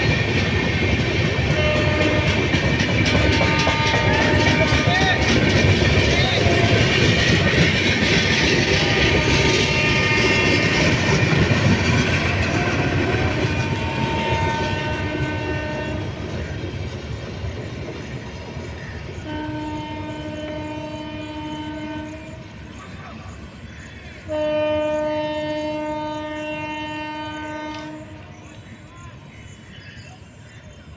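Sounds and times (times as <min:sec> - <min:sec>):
train wheels clattering: 0:00.0 - 0:24.0
locomotive horn blasts: 0:01.5 - 0:05.6, 0:06.2 - 0:07.4, 0:08.6 - 0:16.2, 0:19.2 - 0:22.4, 0:24.3 - 0:28.3.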